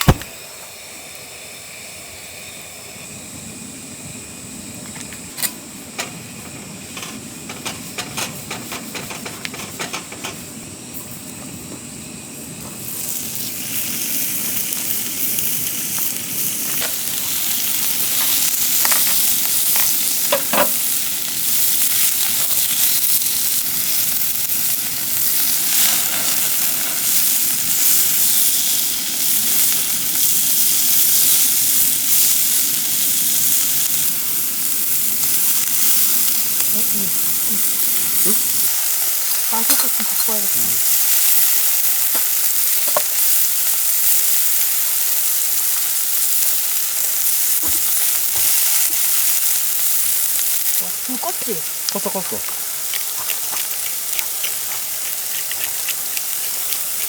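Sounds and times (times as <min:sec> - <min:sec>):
meat sizzling on a grill pan: 0:00.1 - 0:57.0
utensils clicking and tapping: 0:07.0 - 0:10.4, 0:52.0 - 0:57.0.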